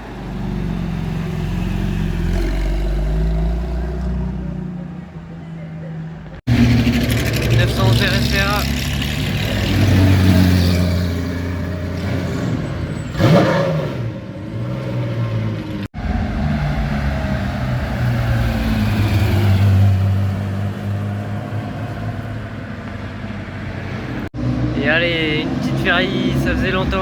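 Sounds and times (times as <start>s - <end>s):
sports car engines driving past: 0.0s - 27.0s.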